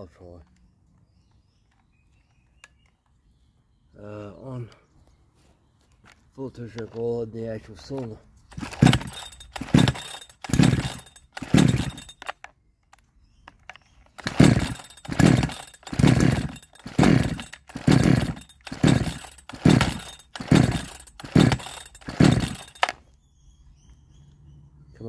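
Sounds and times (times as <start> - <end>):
chainsaw recoil starter pulls: 7.8 - 12.5, 13.4 - 23.1
engine cranking without catching: 7.8 - 12.5, 13.4 - 23.1.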